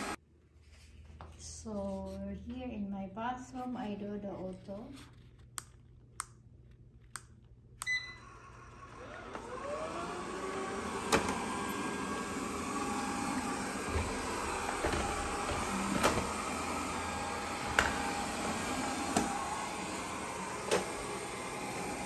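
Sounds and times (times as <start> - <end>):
robot vacuum running: 8.6 - 22.0.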